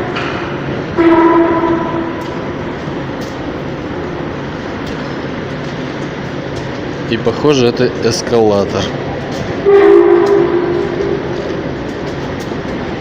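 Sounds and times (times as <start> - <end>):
metro station rumble: 0.0 - 13.0
horn-like moaning tone: 0.9 - 2.6, 9.6 - 11.6.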